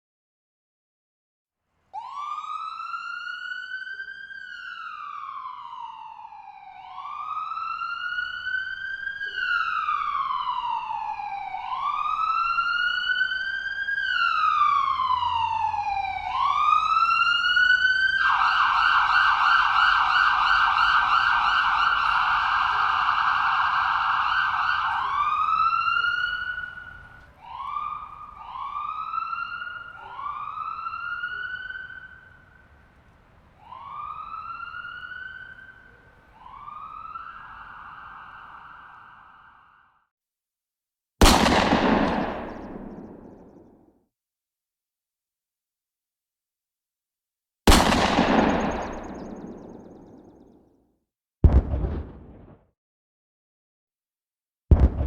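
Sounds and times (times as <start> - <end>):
ambulance siren wailing: 2.0 - 39.9, 41.6 - 43.7, 48.0 - 50.5.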